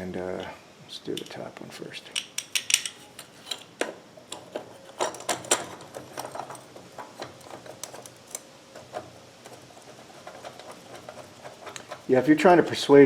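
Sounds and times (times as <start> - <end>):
socket ratchet clicking: 2.2 - 3.6
metal tools tapping: 2.2 - 8.1.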